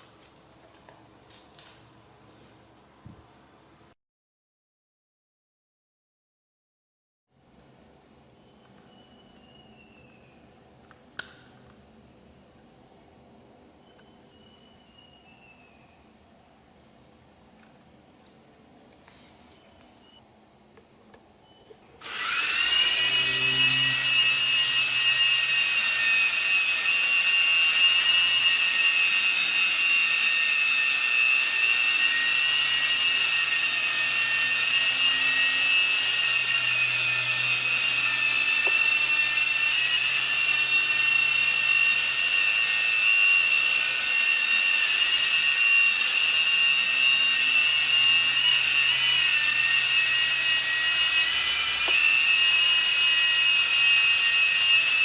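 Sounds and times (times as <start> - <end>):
toy helicopter motor whine: 22.0 - 55.0.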